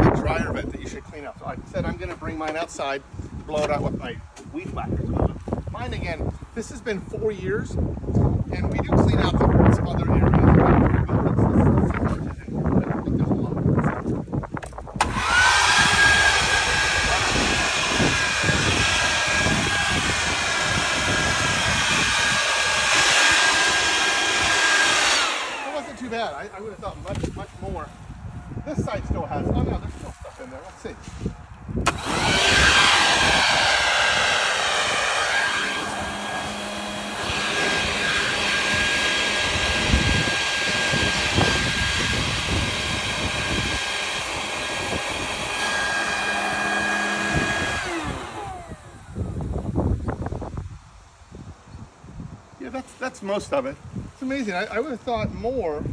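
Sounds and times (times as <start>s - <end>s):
leaf blower running: 15.0s - 27.5s, 31.8s - 49.8s.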